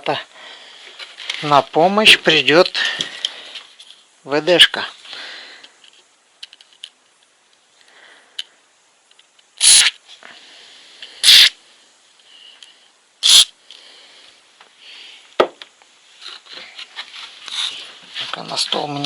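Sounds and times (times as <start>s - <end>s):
aerosol spray hissing: 9.6s - 10.0s, 11.1s - 11.6s, 13.2s - 13.6s.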